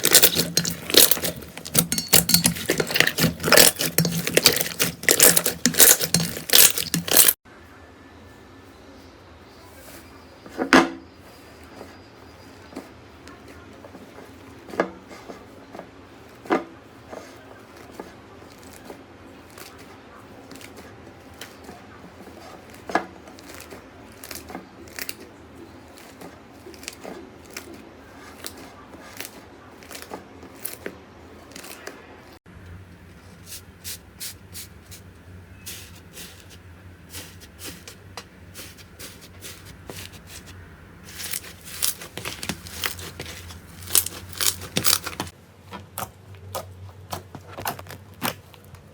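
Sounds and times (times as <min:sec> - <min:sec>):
slime popping and crackling: 0:02.2 - 0:07.4, 0:41.1 - 0:45.3.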